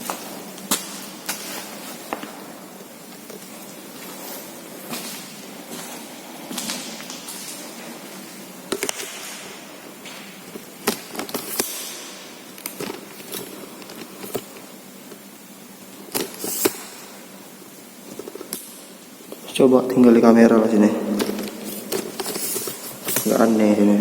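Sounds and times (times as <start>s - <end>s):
footsteps crunching on debris: 0.0s - 14.1s
steady hiss: 0.0s - 24.0s.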